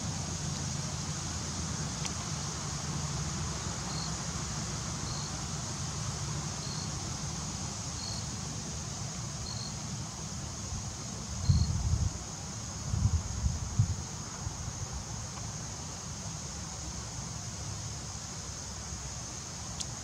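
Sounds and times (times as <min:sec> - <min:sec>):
steady high hiss: 0:00.0 - 0:20.0
wind rumbling on microphone: 0:11.4 - 0:15.1.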